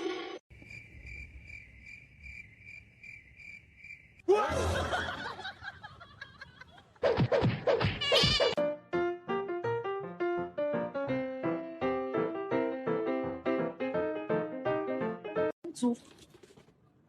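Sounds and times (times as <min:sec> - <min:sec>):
cricket chirping: 0:00.5 - 0:04.3.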